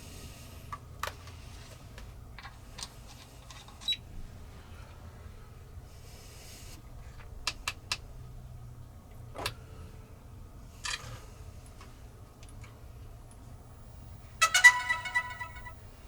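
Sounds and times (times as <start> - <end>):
low steady hum: 8.3 - 16.0.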